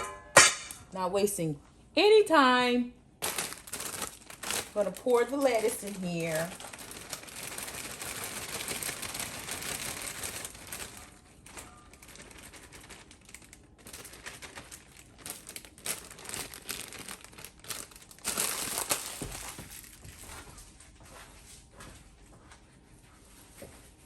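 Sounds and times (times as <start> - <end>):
plastic packaging crinkling: 3.2 - 20.5.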